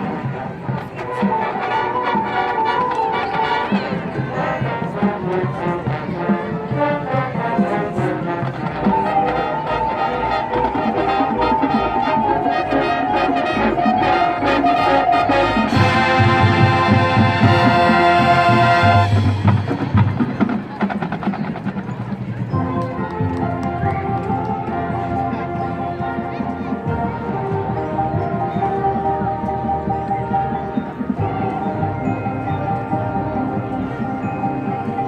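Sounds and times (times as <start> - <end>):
marching band brass: 0.0 - 35.0
percussion strikes: 2.3 - 25.0.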